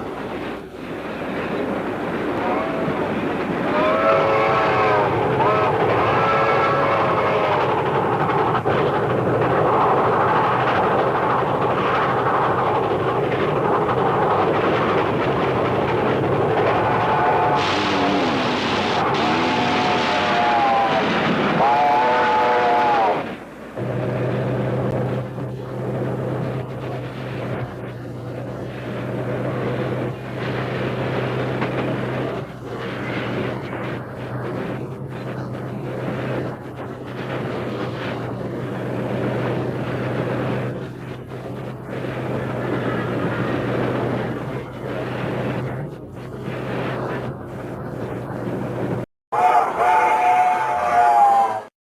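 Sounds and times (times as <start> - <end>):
steam train rumbling: 0.0 - 51.7
steam hiss: 16.8 - 29.4.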